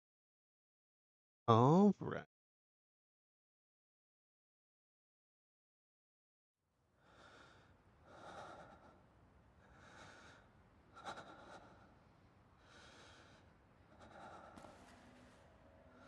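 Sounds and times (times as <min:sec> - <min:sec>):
soft breathing: 0:06.9 - 0:16.0.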